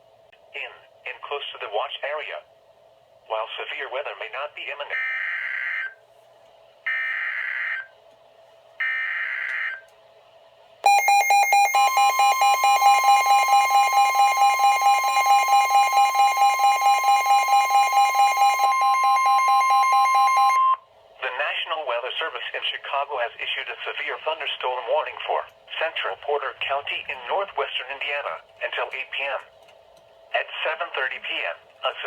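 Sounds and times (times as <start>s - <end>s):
pulsing alarm beeps: 6.9s - 7.9s, 8.8s - 9.8s, 10.9s - 20.8s
steady warning alarm tone: 6.9s - 7.9s, 8.8s - 9.8s, 10.8s - 20.8s.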